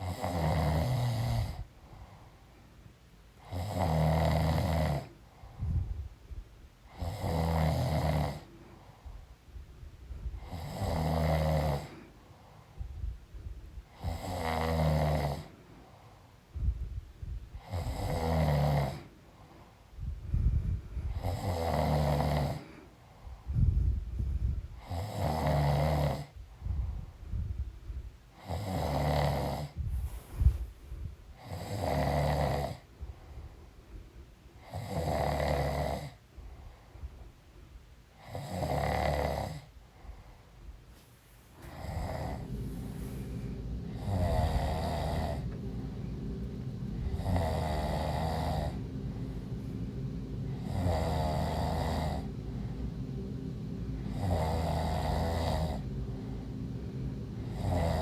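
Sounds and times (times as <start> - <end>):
woman snoring: 0.0 - 1.6, 3.4 - 5.1, 6.9 - 8.5, 10.4 - 11.9, 13.9 - 15.5, 17.6 - 19.1, 21.1 - 22.7, 24.8 - 26.3, 28.4 - 29.8, 31.4 - 32.8, 34.6 - 36.2, 41.6 - 52.8, 54.0 - 56.5, 57.3 - 58.0
steady low hum: 0.0 - 58.0.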